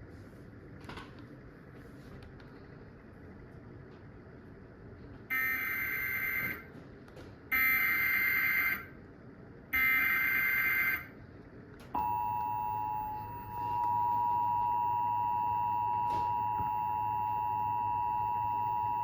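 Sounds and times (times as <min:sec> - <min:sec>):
two-tone attention signal: 0:12.0 - 0:19.0.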